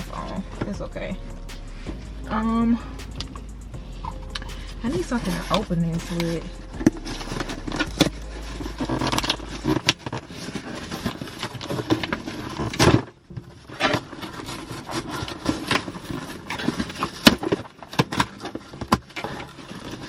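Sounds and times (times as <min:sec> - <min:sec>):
packaging rustling and tearing: 0:04.1 - 0:20.0.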